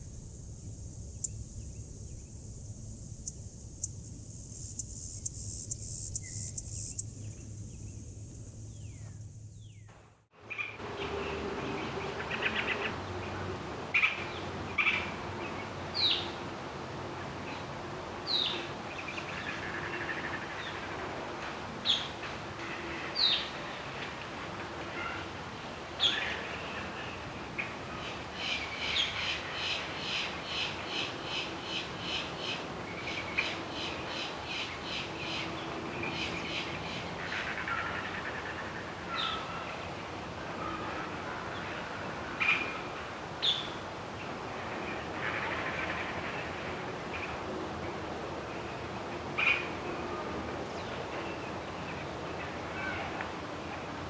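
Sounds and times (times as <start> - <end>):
birds chirping and calling: 0.0 - 10.2
faint steady background: 0.0 - 10.3.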